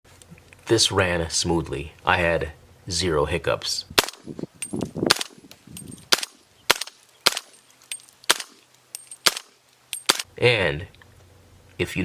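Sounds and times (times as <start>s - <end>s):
rifle shots: 4.0s - 4.3s, 5.1s - 5.4s, 6.1s - 7.6s, 8.2s - 8.6s, 9.2s - 10.2s.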